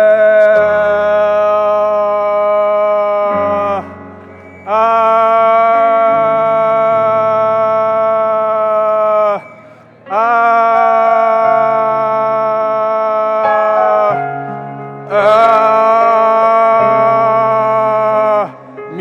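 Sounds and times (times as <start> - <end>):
man singing long notes: 0.0 - 19.0.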